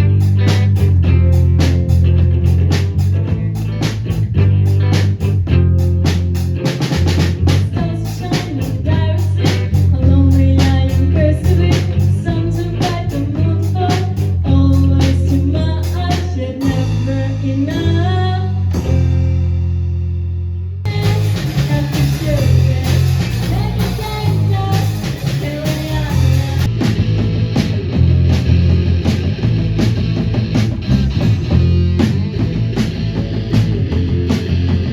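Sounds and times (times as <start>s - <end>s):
electric guitar: 0.0s - 19.4s, 20.9s - 34.9s
bass guitar: 0.0s - 34.9s
drum kit: 0.0s - 34.9s
person singing: 20.9s - 26.7s.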